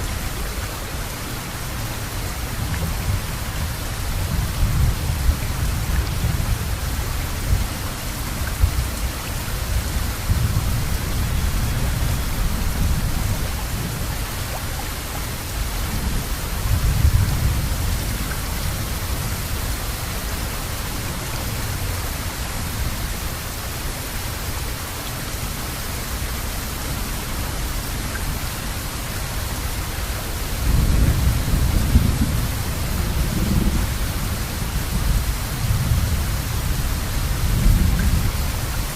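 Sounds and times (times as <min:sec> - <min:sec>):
heavy rain: 0:00.0 - 0:38.9
rolling thunder: 0:30.6 - 0:38.8.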